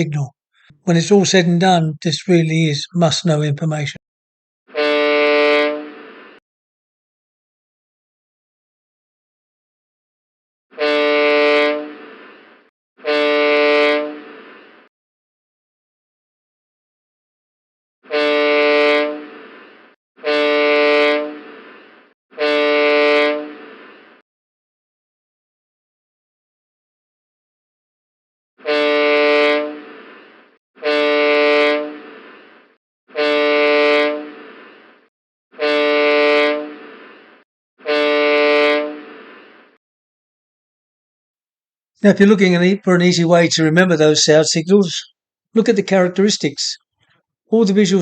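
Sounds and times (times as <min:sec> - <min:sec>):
ship horn short blasts: 0:04.7 - 0:06.1, 0:10.7 - 0:12.2, 0:13.0 - 0:14.4, 0:18.1 - 0:19.6, 0:20.2 - 0:21.6, 0:22.4 - 0:23.9, 0:28.6 - 0:30.2, 0:30.8 - 0:32.3, 0:33.1 - 0:34.6, 0:35.6 - 0:37.1, 0:37.8 - 0:39.3.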